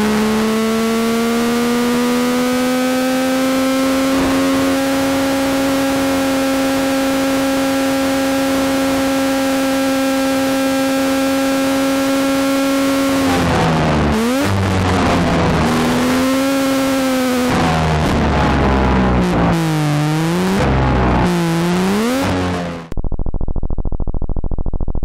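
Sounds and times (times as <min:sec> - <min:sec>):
racing car engine high revs: 0:00.0 - 0:23.0
wind noise: 0:13.2 - 0:16.4.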